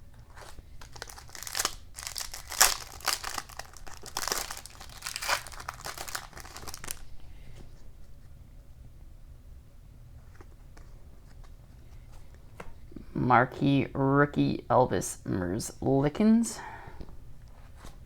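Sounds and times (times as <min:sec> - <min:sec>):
wrapper crinkling and tearing: 0:00.3 - 0:07.1.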